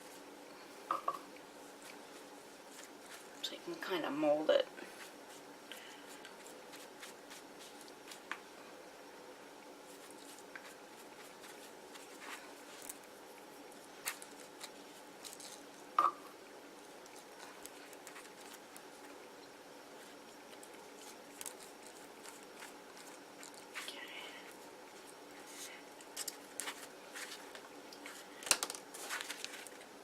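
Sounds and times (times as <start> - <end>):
steady low hum: 0.0 - 30.0.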